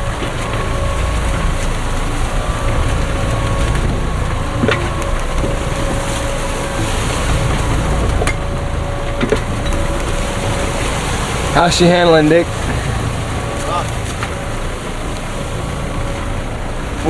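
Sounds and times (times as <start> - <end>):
rush of sea: 0.0 - 17.0
wind buffeting microphone: 0.0 - 17.0.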